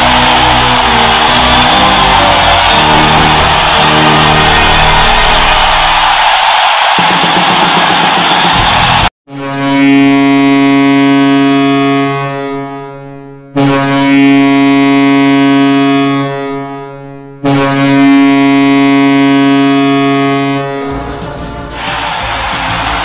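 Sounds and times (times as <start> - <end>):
goal horn deep blasts: 0.0 - 5.8, 9.3 - 21.4
crowd noise: 0.0 - 9.1, 20.9 - 23.0.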